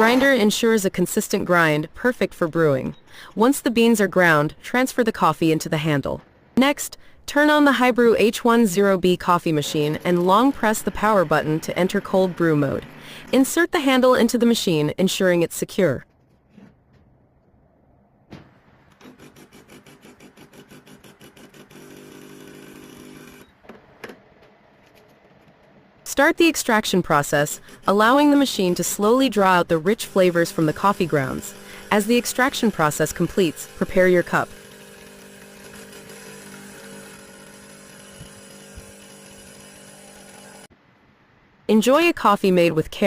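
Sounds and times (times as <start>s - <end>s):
coffee machine pump pulsing: 8.3s - 13.6s, 19.0s - 23.5s, 26.7s - 40.7s.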